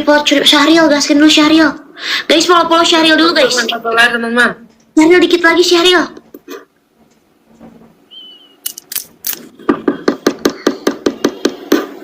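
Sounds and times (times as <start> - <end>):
high whistle-like tone: 8.1 - 8.6.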